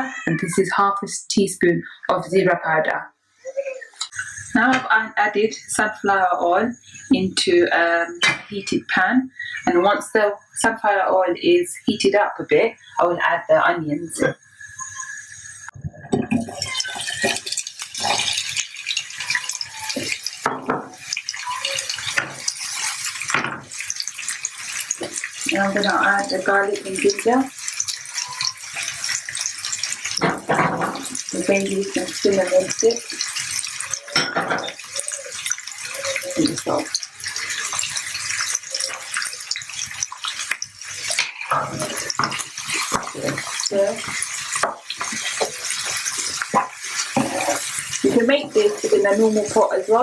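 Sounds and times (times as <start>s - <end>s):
onions sizzling in oil: 3.3s - 4.7s, 5.3s - 8.5s, 11.5s - 15.8s, 16.4s - 50.0s
knocks against pan: 20.5s - 21.0s.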